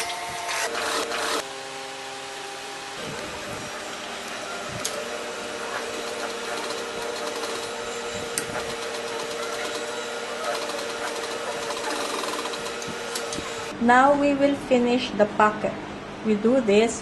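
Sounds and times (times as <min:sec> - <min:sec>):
sewing machine stitching: 0:05.6 - 0:13.7.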